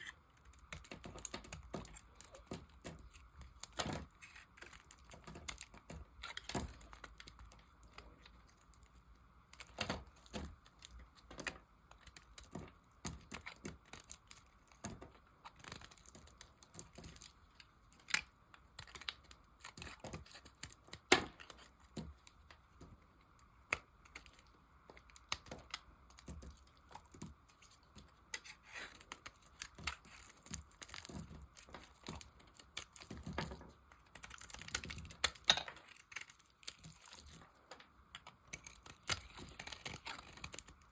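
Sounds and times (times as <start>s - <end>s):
knife carving dry soap: 0.0s - 40.9s.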